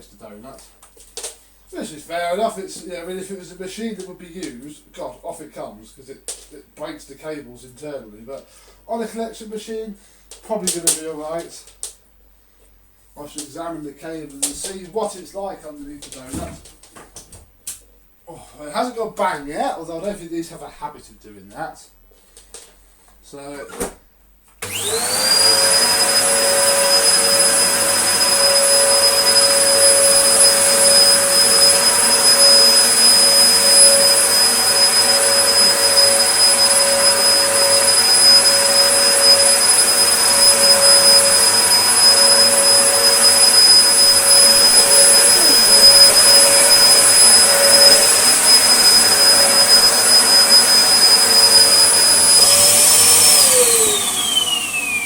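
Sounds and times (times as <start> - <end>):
vacuum cleaner whining: 24.6 - 55.0.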